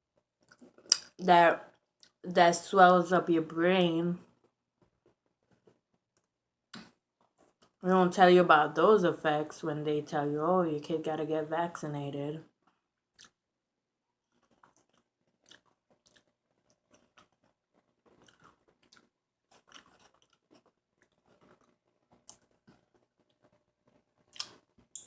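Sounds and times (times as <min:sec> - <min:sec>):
chewing burger: 0:13.1 - 0:13.4, 0:14.2 - 0:25.0.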